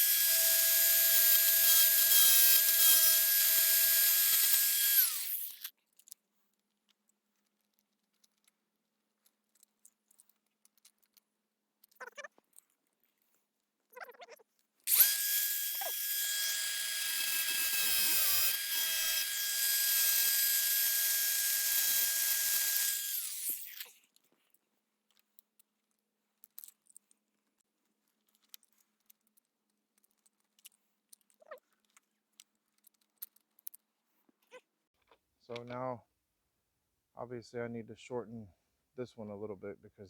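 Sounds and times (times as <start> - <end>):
power tool cutting rods: 0.0 - 5.7, 14.9 - 23.9.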